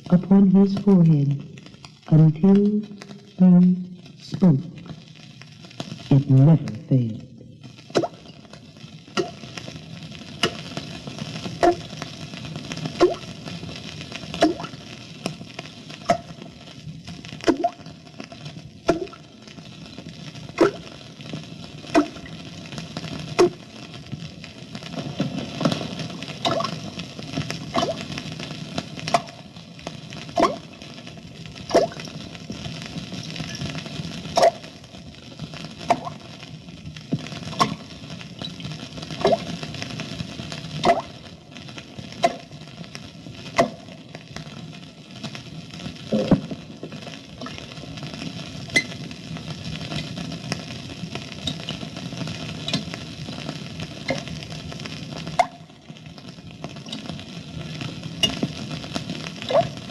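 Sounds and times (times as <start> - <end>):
low steady background noise: 0.0 - 17.2
water droplets dripping: 7.4 - 8.4, 9.2 - 9.4, 13.0 - 13.2, 14.4 - 14.8, 17.5 - 17.8, 18.9 - 19.2, 20.6 - 20.8, 26.4 - 26.8, 31.7 - 32.1, 35.9 - 36.2, 40.8 - 41.2, 55.4 - 55.7
water droplets plopping: 26.4 - 26.7, 35.9 - 36.2.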